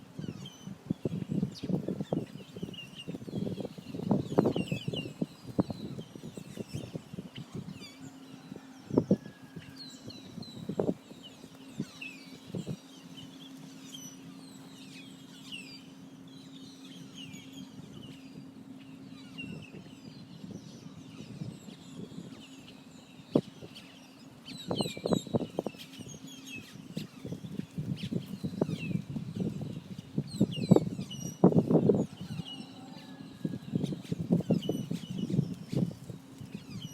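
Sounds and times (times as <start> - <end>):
small birds chirping: 0.2 - 8.4, 9.0 - 36.9.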